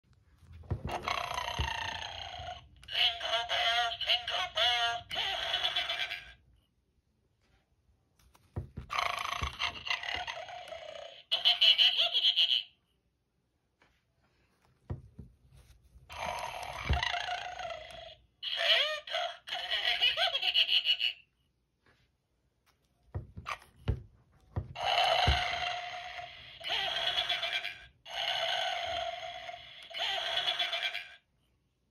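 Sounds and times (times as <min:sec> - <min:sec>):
toy playing recorded snoring: 0:00.8 - 0:06.4, 0:08.9 - 0:11.9, 0:16.1 - 0:20.4, 0:24.7 - 0:31.3.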